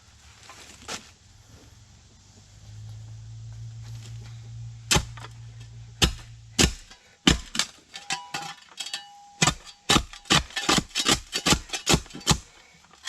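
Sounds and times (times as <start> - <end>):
low steady hum: 0.0 - 13.0
metal spade striking stones: 4.8 - 13.0.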